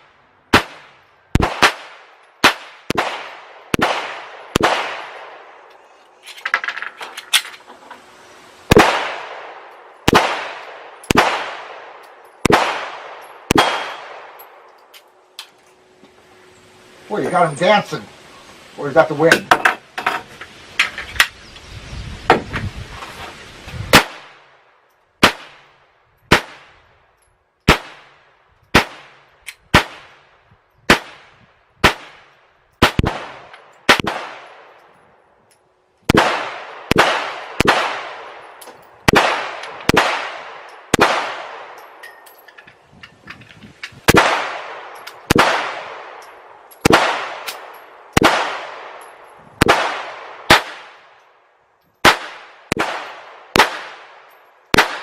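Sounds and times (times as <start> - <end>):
gunshots with ringing echo: 0.5 - 5.6, 8.7 - 14.6, 30.9 - 34.8, 36.1 - 42.0, 44.1 - 51.2, 52.0 - 55.0.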